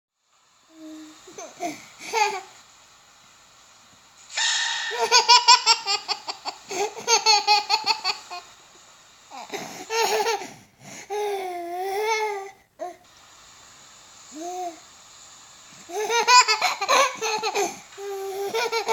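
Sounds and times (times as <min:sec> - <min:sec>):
baby squealing: 0:04.3 - 0:06.2
baby laughing: 0:04.4 - 0:08.4, 0:09.4 - 0:10.5, 0:15.9 - 0:18.9.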